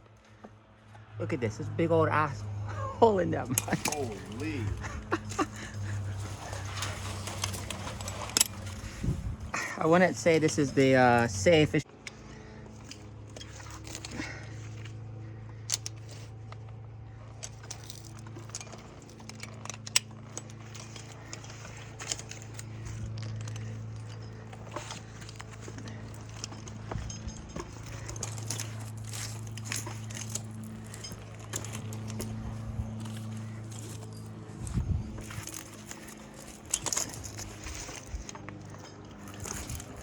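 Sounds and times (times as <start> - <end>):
steady low hum: 0.0 - 40.0
metal hardware clinking and jangling: 3.4 - 16.4, 17.2 - 40.0.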